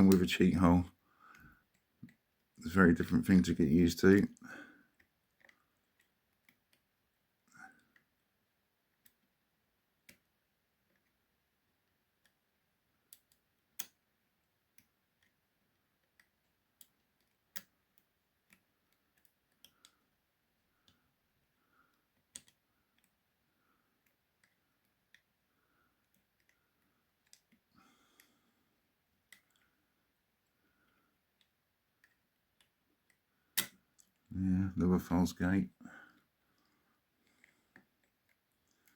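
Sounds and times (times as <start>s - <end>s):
metallic clicks and taps: 22.2s - 23.2s, 31.4s - 34.3s.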